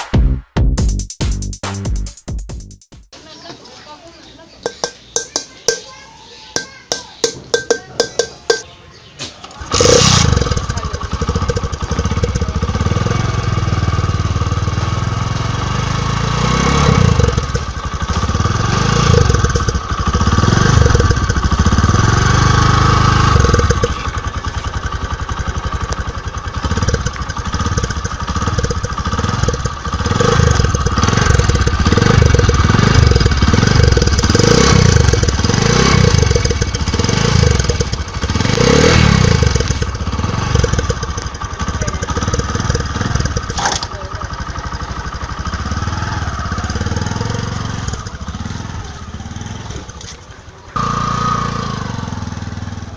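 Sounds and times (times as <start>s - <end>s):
light clinks: 4.6s - 6.0s, 6.6s - 8.7s
motorbike engine revving: 9.4s - 52.9s.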